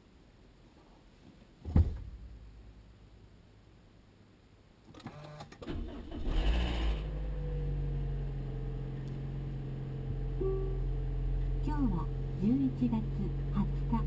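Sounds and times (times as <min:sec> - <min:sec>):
car engine idling: 0:06.1 - 0:14.0.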